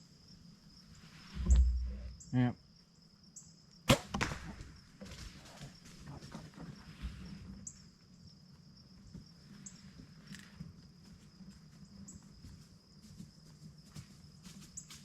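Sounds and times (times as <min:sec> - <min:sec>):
insect trill: 0:00.0 - 0:15.0
small clicks and rustles: 0:09.7 - 0:10.8.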